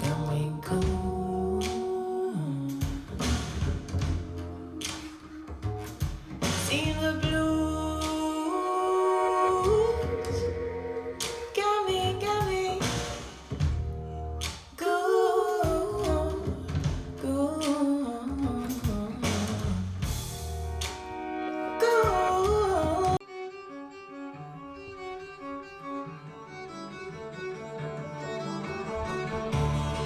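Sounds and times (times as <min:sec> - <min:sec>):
strings playing: 0:20.4 - 0:30.0.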